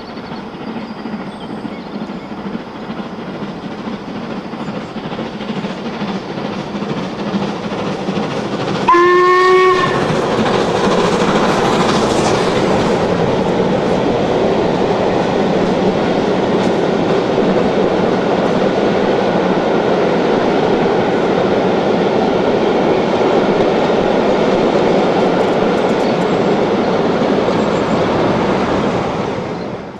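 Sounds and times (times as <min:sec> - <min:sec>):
train passing with clatter: 0:00.0 - 0:29.9
steam locomotive whistle: 0:08.9 - 0:10.4.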